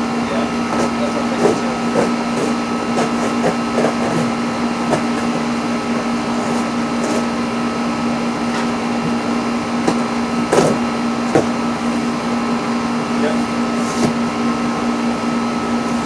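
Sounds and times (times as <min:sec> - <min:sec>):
steady mechanical hum: 0:00.0 - 0:16.0
packaging knocks and rustles: 0:00.7 - 0:05.5, 0:08.5 - 0:11.8.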